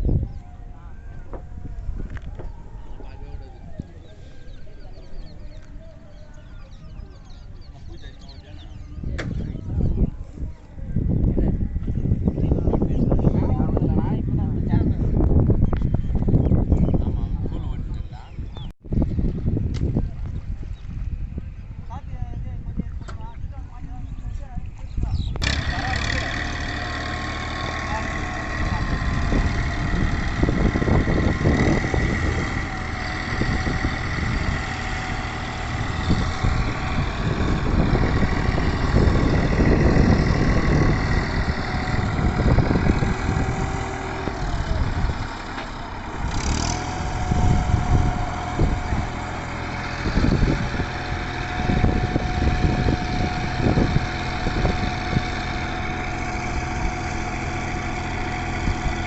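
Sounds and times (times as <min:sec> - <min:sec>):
tractor diesel engine running: 0:00.0 - 0:18.3, 0:25.1 - 0:59.0.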